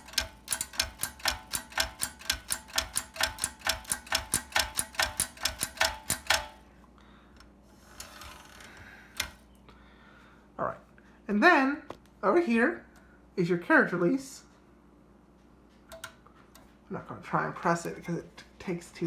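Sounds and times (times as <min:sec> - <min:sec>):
typewriter clicking: 0:00.0 - 0:06.6, 0:09.2 - 0:09.4.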